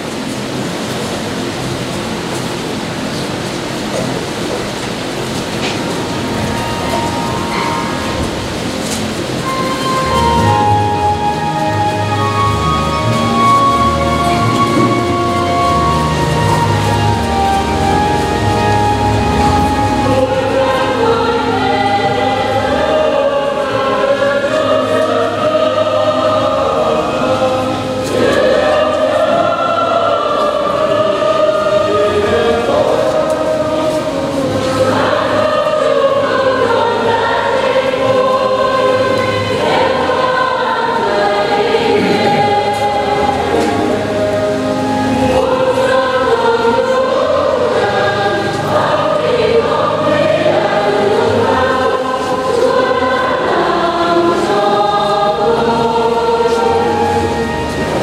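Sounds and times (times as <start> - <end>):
choir singing a hymn: 0.0 - 58.0.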